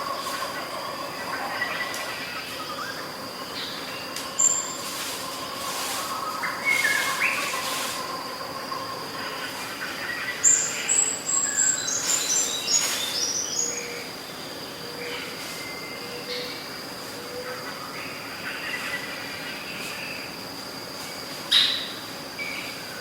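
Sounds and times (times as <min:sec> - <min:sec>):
birds chirping: 0:00.0 - 0:08.4, 0:09.0 - 0:16.6
insect-like drone: 0:00.0 - 0:23.0.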